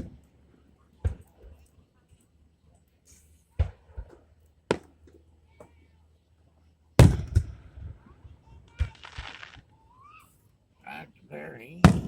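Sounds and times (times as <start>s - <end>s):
fireworks booming: 7.0s - 8.0s, 11.8s - 12.0s
rumbling tail of fireworks: 7.0s - 9.3s.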